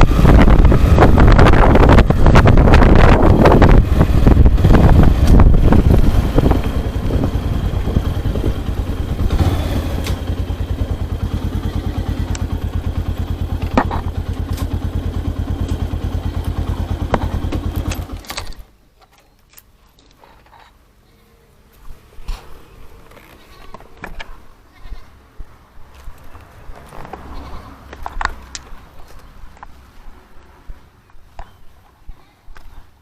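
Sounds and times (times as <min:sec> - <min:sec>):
wind blasting microphone: 0:00.0 - 0:10.0
motorcycle engine idling: 0:00.0 - 0:18.2.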